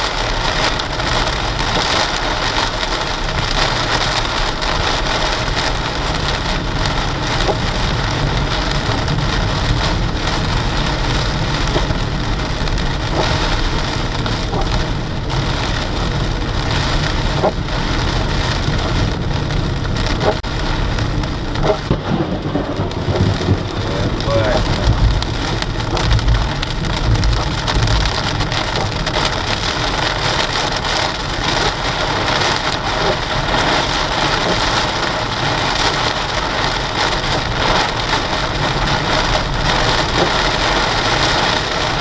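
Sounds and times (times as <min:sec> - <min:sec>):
heavy rain pouring: 0:00.0 - 0:42.0
low rumbling thunder: 0:18.6 - 0:29.2.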